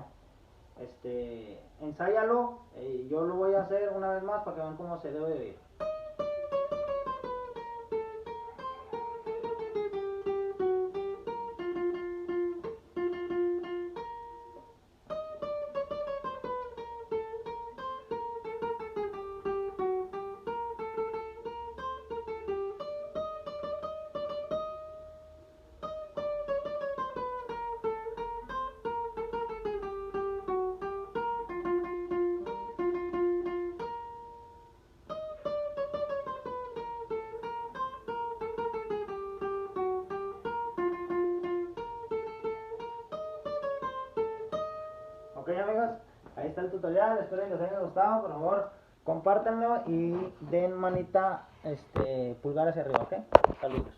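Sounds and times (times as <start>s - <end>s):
guitar single-note melody: 4.4s - 46.0s.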